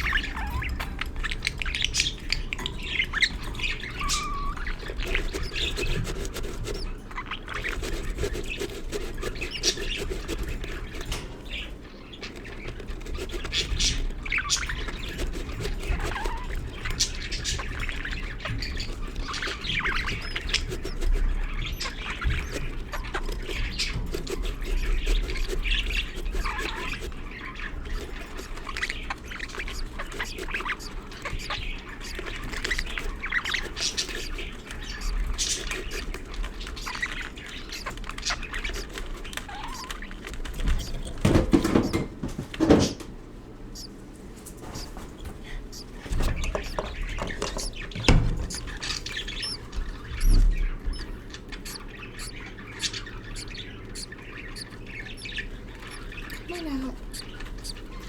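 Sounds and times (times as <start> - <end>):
budgerigars chirping and squawking: 0.0 - 58.0.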